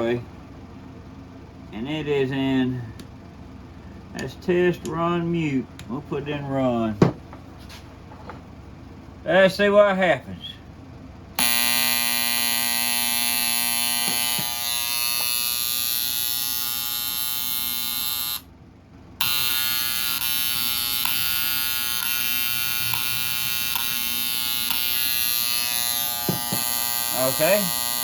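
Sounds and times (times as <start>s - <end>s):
alarm buzzer: 11.4s - 18.5s, 19.2s - 28.0s.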